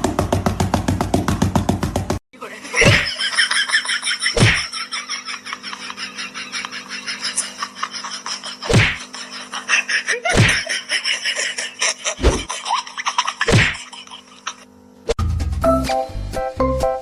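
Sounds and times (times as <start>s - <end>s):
sudden thumps: 0.0s - 2.2s
steady background hum: 2.4s - 15.2s
music: 15.2s - 17.0s.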